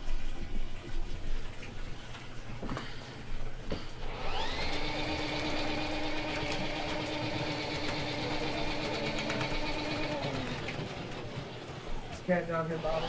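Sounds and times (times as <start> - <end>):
drain cleaning machine motor whine: 4.0 - 13.0.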